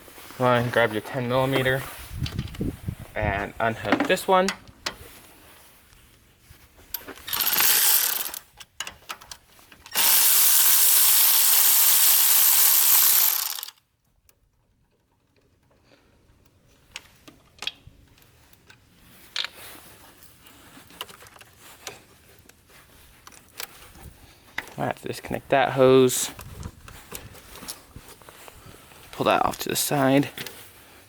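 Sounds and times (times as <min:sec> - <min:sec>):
metal parts clinking: 0:07.0 - 0:08.9, 0:09.9 - 0:13.7
fast ratcheting: 0:07.2 - 0:08.5, 0:09.9 - 0:13.8.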